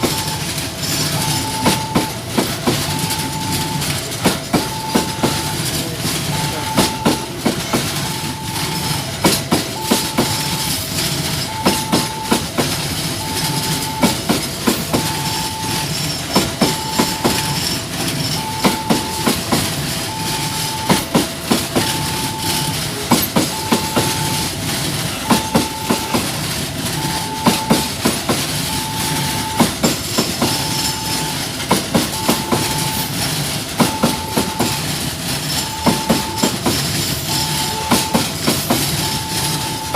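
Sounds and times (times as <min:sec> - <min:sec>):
train wheels clicking over rail joints: 0:00.0 - 0:39.9.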